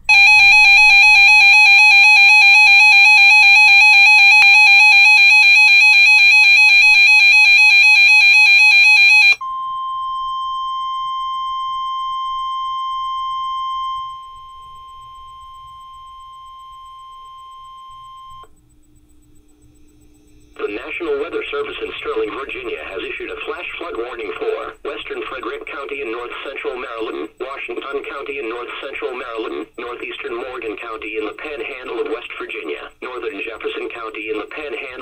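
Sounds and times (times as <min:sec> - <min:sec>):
warbling alarm tone: 0:00.0 - 0:09.4
steady warning alarm tone: 0:00.0 - 0:18.5, 0:19.4 - 0:35.0.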